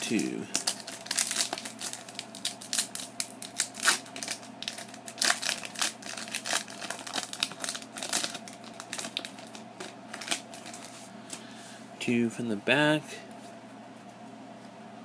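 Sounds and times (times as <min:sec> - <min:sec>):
foil wrapper crinkling: 0:00.0 - 0:10.9.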